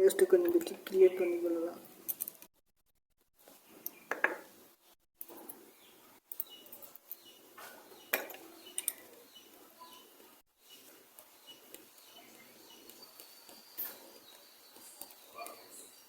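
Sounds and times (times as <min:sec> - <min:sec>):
small tools clicking and scraping: 0:01.9 - 0:02.5, 0:05.2 - 0:10.1, 0:10.7 - 0:16.0.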